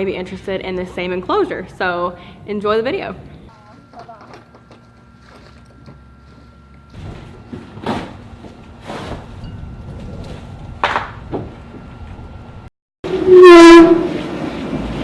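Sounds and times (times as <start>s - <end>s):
sharp knocks and clattering bangs: 10.8s - 11.8s.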